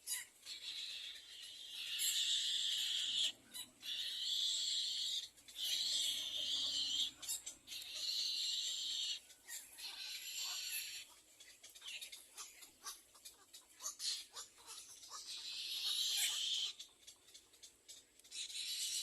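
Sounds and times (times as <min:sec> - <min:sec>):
egret chick raspy begging calls: 0:00.1 - 0:11.2, 0:11.8 - 0:17.0.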